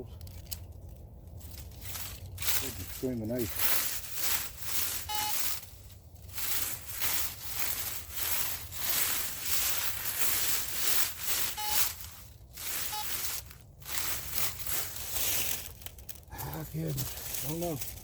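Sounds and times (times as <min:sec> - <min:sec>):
rustling in dry leaves: 0:00.0 - 0:18.0
metal detector beeps: 0:05.0 - 0:05.6, 0:11.4 - 0:12.0, 0:12.6 - 0:13.4.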